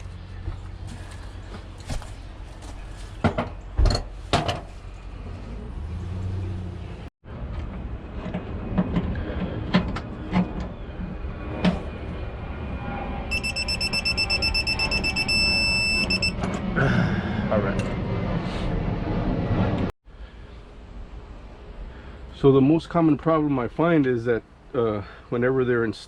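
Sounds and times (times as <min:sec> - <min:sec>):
electronic beeper beeping: 0:13.3 - 0:16.4.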